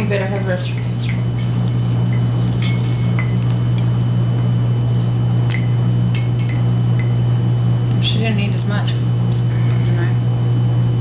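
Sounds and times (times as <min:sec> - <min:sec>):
low electrical hum: 0:00.0 - 0:11.0
dishes and utensils clinking: 0:00.7 - 0:03.6.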